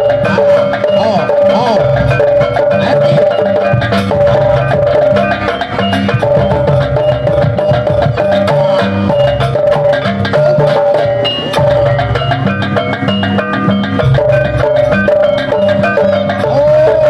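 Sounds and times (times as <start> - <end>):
fast dense drumming: 0.0 - 17.0
high wavering melody: 0.0 - 17.0.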